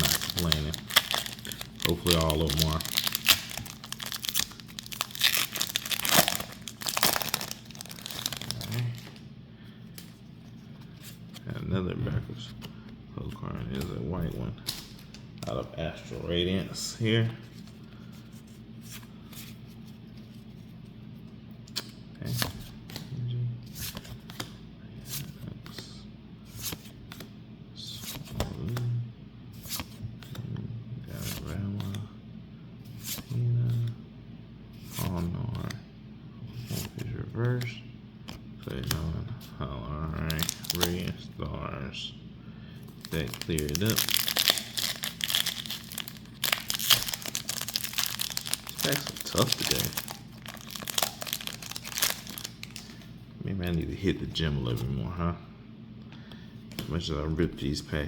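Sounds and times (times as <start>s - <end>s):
foil wrapper crinkling and tearing: 0.0s - 9.2s, 40.3s - 41.1s, 43.0s - 53.0s
trading cards flicking and rustling: 0.0s - 9.2s, 40.2s - 41.1s, 42.8s - 53.1s.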